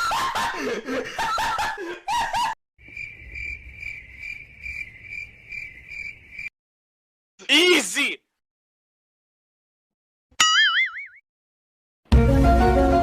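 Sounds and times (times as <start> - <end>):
burst of laughter: 0.0 - 2.6.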